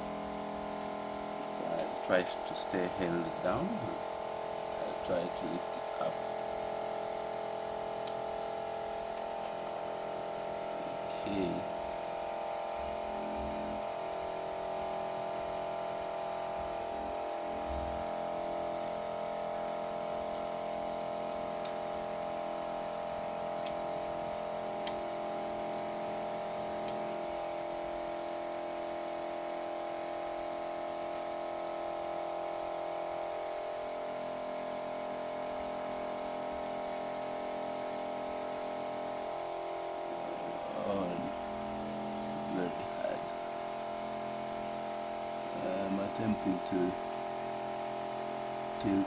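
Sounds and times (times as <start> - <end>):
vacuum pump humming: 0.0 - 49.0.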